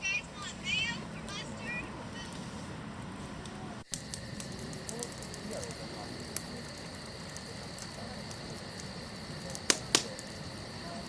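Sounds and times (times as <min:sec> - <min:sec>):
campfire wood popping: 0:02.2 - 0:11.0.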